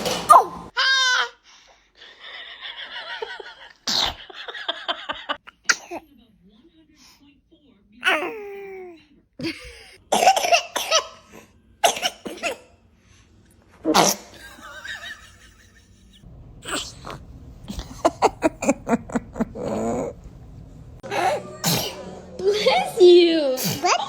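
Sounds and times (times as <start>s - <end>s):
baby sneezing and coughing: 5.5s - 6.0s, 10.1s - 12.8s, 13.9s - 14.4s, 21.6s - 22.1s, 23.6s - 24.0s.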